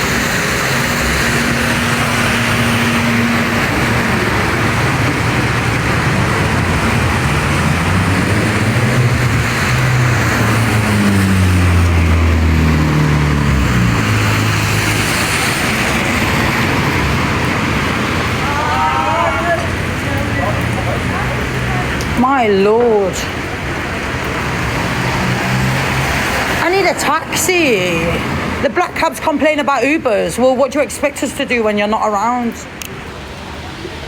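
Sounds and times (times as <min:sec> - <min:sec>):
vehicle engine passing: 0:00.0 - 0:22.2, 0:23.6 - 0:27.0
hiss of wet tyres and rain: 0:00.0 - 0:28.7, 0:32.6 - 0:34.0.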